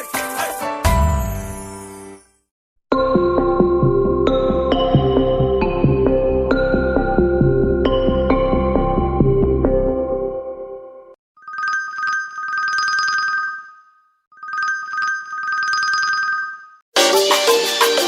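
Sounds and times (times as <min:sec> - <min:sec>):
phone ringing like telephone bell: 0:11.4 - 0:16.8.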